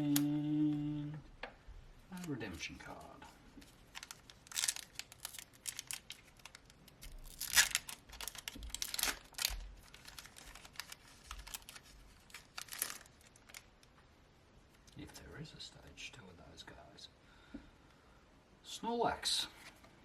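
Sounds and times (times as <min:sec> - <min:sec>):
trading cards handled: 0:02.2 - 0:13.7
foil wrapper crinkling and tearing: 0:03.6 - 0:13.9.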